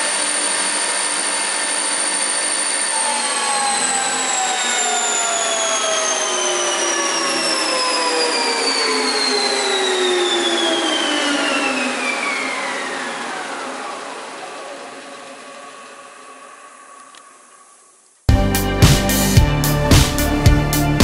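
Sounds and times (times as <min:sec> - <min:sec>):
planer spindles whining down: 0:00.0 - 0:18.0.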